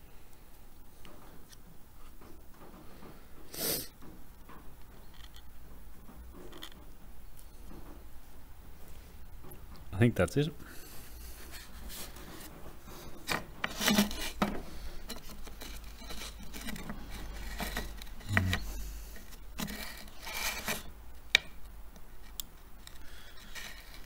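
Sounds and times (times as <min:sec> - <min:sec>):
steady low hum: 0:04.3 - 0:24.0
plastic welder scraping: 0:10.8 - 0:21.0, 0:22.8 - 0:24.0.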